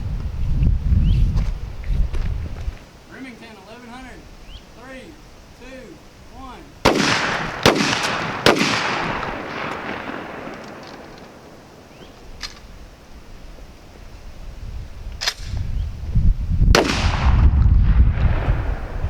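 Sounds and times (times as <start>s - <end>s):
low wind rumble: 0.0s - 19.0s
shotgun shots: 6.8s - 11.7s, 16.7s - 17.5s.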